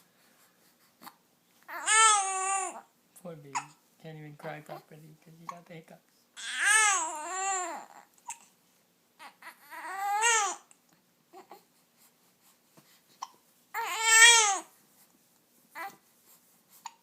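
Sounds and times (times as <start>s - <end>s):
baby crying: 1.0s - 2.9s, 6.4s - 8.4s, 9.2s - 10.7s, 13.8s - 14.7s.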